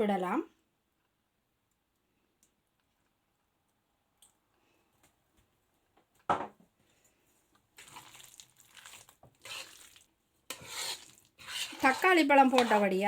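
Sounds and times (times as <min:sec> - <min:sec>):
spoon stirring thick curry: 0:07.6 - 0:13.0.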